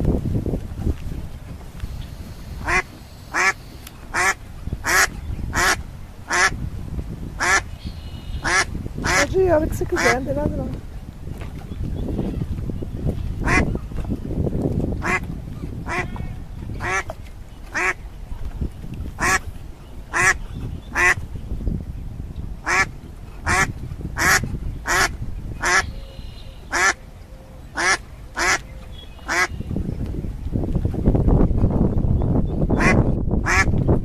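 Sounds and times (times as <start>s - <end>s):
duck quacking: 2.6s - 6.6s, 8.4s - 9.3s, 16.8s - 17.1s, 19.2s - 19.4s, 22.7s - 25.9s, 26.7s - 27.0s, 27.8s - 28.6s.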